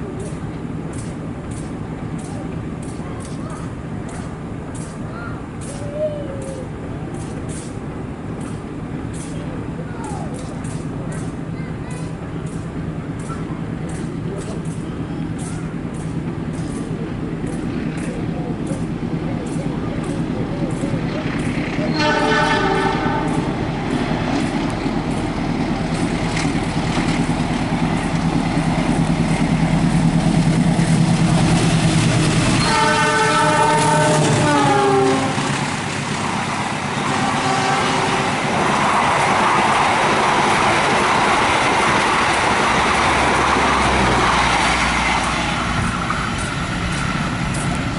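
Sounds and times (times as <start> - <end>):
locomotive engine drone: 0.0 - 47.9
train carriages rushing by: 0.0 - 47.9
train horn: 21.9 - 23.5, 32.6 - 35.6, 37.0 - 38.4.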